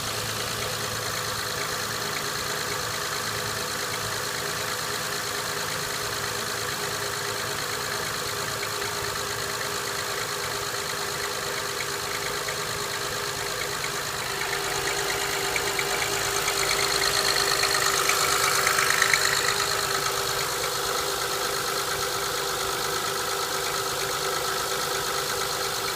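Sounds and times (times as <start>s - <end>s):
car engine idling: 0.0s - 25.9s
rapid knocking tick: 10.1s - 25.9s.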